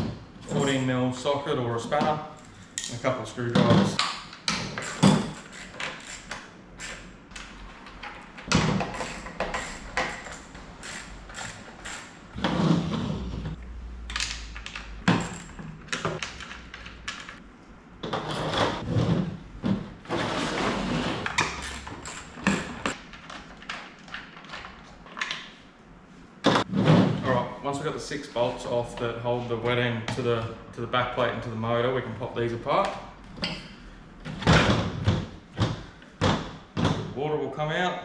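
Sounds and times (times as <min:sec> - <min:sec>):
hand tools clicking and scraping: 0:00.4 - 0:00.9, 0:02.0 - 0:13.3, 0:14.1 - 0:17.4, 0:20.1 - 0:25.4.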